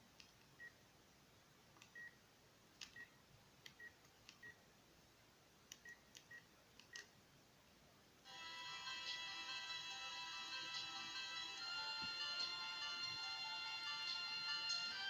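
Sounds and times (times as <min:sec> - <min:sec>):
ringtone playing: 0:08.3 - 0:15.0.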